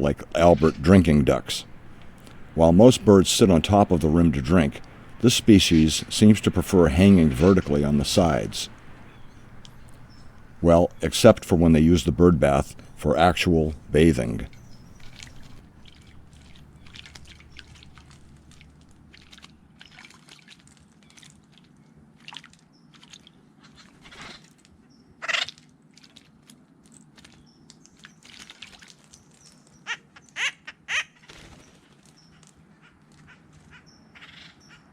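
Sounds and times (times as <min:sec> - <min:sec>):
loud bird calls: 0:00.0 - 0:19.4
birds splashing in water: 0:00.0 - 0:21.3.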